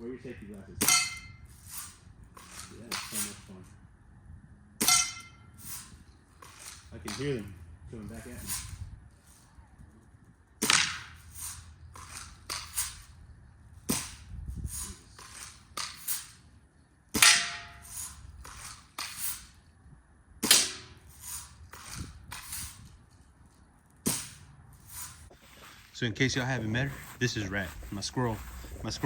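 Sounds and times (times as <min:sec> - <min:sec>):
air gun shots: 0:00.8 - 0:03.4, 0:10.6 - 0:13.1, 0:13.8 - 0:16.4, 0:17.1 - 0:19.6, 0:20.4 - 0:22.9, 0:24.0 - 0:25.2.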